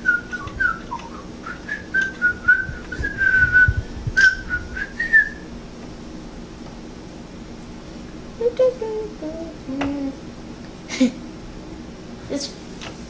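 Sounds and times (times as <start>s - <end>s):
person whistling a tune: 0.0s - 5.4s.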